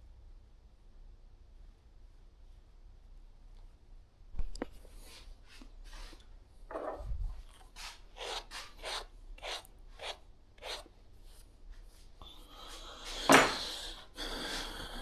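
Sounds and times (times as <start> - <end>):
rubbing or scraping strokes: 5.0 - 12.1.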